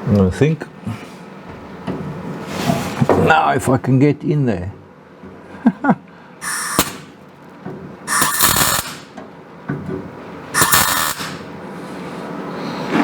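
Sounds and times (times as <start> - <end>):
welding crackling: 6.4 - 7.2, 8.1 - 9.1, 10.6 - 11.5.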